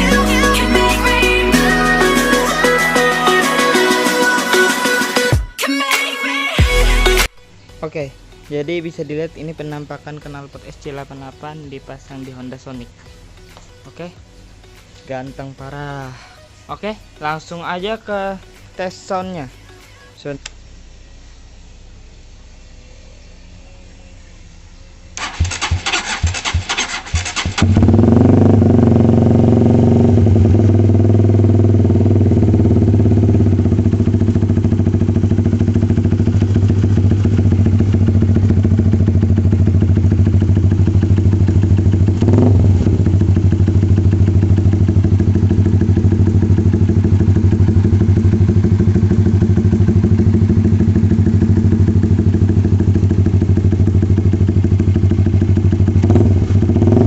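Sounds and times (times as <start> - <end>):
motorcycle engine idling: 22.8 - 57.0
motorcycle engine cranking: 25.2 - 28.6.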